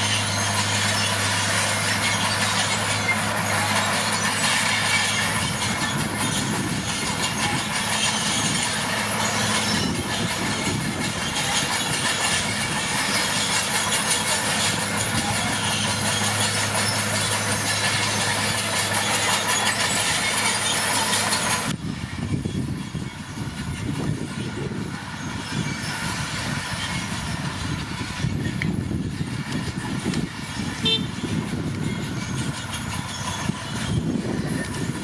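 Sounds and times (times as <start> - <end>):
bulldozer diesel engine running: 0.0 - 35.0
metallic clatter of steel tracks: 0.0 - 35.0.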